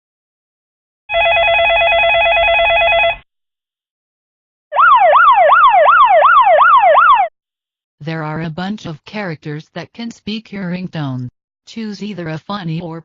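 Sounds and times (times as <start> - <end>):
electronic telephone ring: 1.1 - 3.2
siren effect wailing: 4.7 - 7.3.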